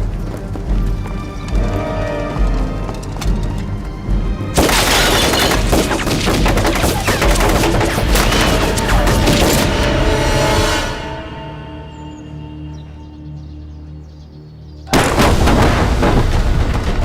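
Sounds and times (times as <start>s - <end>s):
film soundtrack music: 0.0s - 17.0s
rapid gunfire and bangs: 4.5s - 9.9s.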